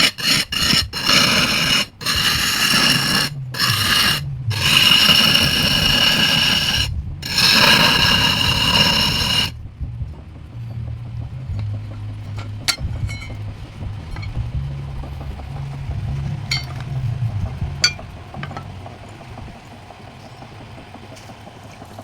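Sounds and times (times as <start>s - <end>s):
lathe tool scraping wood: 0.0s - 9.5s.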